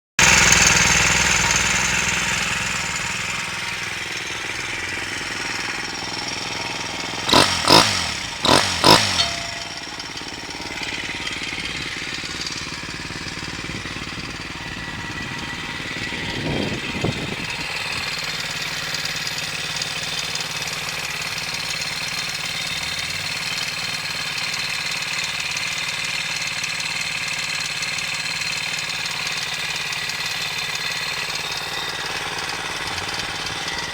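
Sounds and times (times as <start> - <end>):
engine revving: 0.2 - 25.5, 31.2 - 33.9
small motorbike engine idling: 0.2 - 33.9.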